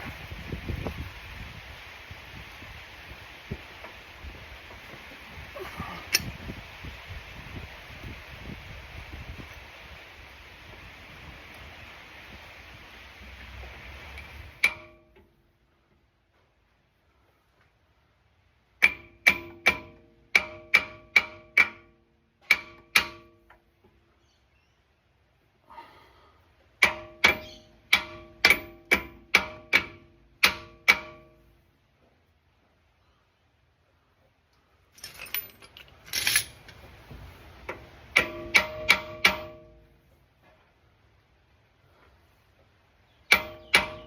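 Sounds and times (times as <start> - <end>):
metal tools clinking and scraping: 6.0 - 6.4, 34.9 - 36.9
hammer striking metal: 14.6 - 15.1, 18.8 - 23.4, 26.8 - 31.4, 38.2 - 39.8, 43.3 - 44.0
sharp metal strikes ringing: 43.3 - 44.0.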